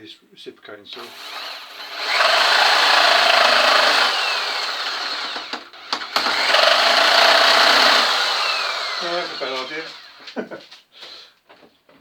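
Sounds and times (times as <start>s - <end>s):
reciprocating saw cutting: 1.0s - 10.3s.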